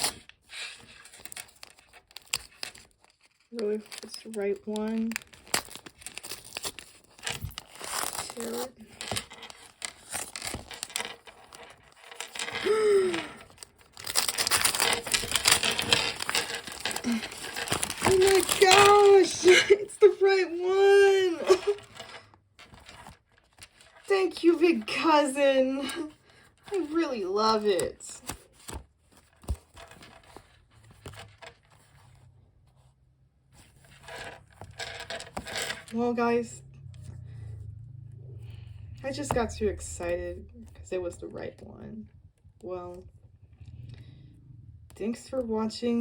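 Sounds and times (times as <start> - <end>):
paper packaging tearing and crinkling: 0.0 - 26.1
handling scrapes rustles and clicks: 0.0 - 36.0.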